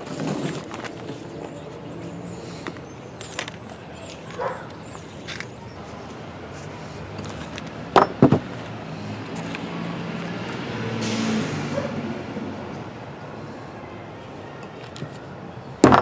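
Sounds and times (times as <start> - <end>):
car passing: 6.2 - 14.2.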